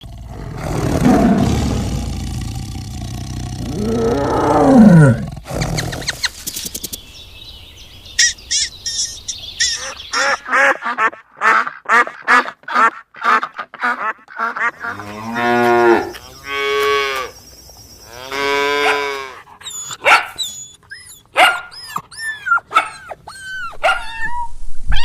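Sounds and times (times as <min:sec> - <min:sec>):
animal deep rough roar: 0:00.0 - 0:06.0.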